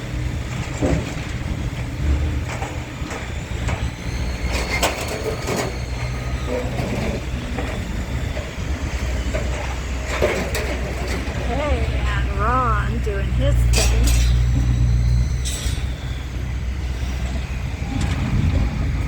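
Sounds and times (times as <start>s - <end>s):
heavy diesel machinery running: 0.0s - 19.0s
metallic clanks of scrap: 13.6s - 16.0s.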